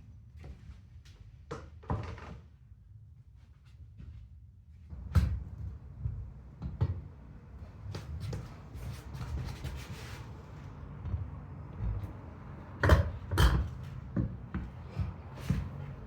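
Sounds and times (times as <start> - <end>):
rustling and scraping: 7.8 - 11.0.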